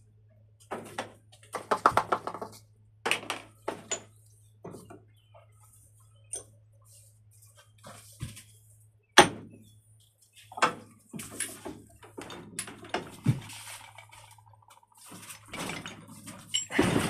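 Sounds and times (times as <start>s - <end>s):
tools and containers clinking: 10.5s - 17.0s.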